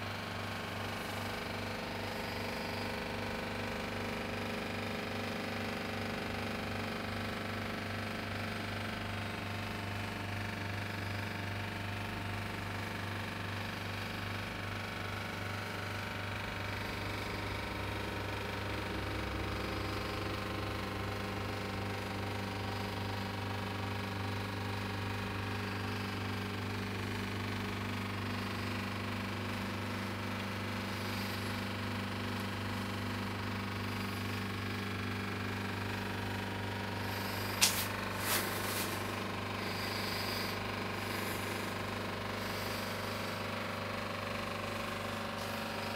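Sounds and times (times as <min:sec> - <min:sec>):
refrigerator compressor hum: 0:00.0 - 0:45.9.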